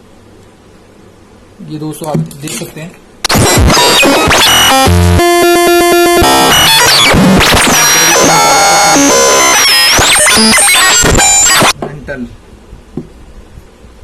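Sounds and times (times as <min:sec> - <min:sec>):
harsh electronic synthesizer: 0:03.2 - 0:11.8.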